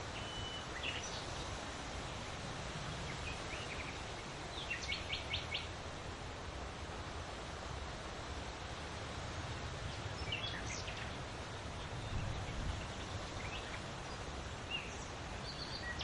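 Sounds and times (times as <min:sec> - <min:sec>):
faint bird chirps: 0:00.1 - 0:01.4.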